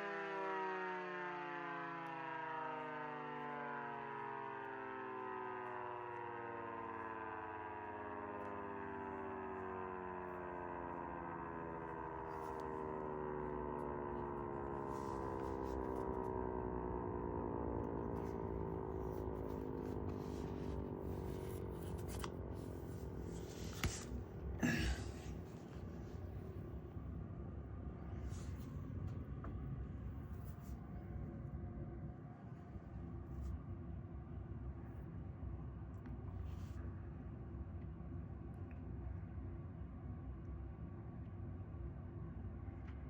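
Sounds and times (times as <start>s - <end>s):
siren winding down: 0.0s - 24.0s.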